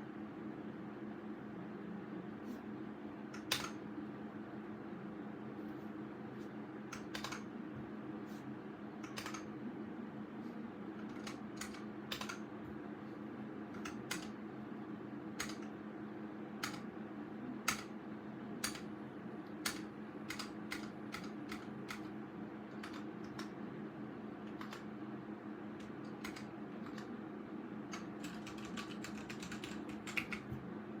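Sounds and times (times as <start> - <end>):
mechanical keyboard typing: 3.4 - 3.8, 6.9 - 7.5, 9.0 - 9.5, 11.0 - 12.5, 13.8 - 14.4, 15.4 - 15.7, 16.6 - 16.9, 17.6 - 17.9, 18.6 - 18.9, 19.6 - 22.1, 22.7 - 23.5, 24.5 - 24.9, 25.8 - 27.1, 27.9 - 30.5.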